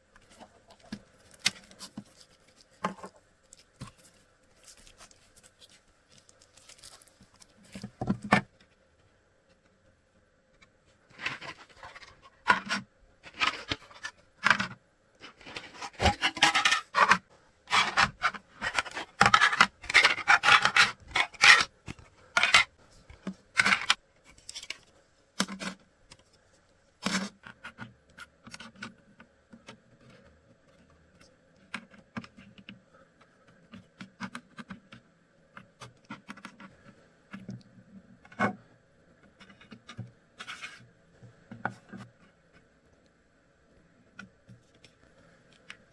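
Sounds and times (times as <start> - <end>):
faint steady hum: 0.0 - 45.9
hands handling plastic parts: 0.1 - 8.8, 11.1 - 26.2.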